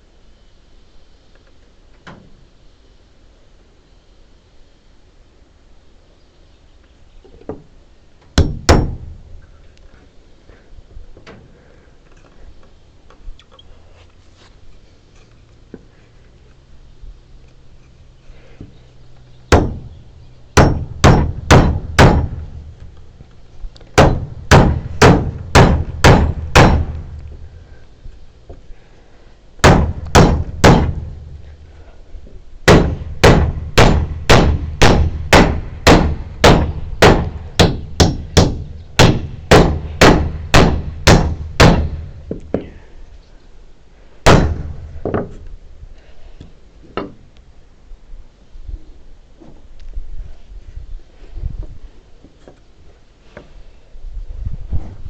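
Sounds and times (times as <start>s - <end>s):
hammer striking timber: 8.4s - 9.2s, 19.5s - 19.9s, 20.6s - 22.7s, 24.0s - 27.2s, 29.6s - 31.4s, 32.6s - 42.7s, 44.2s - 45.4s.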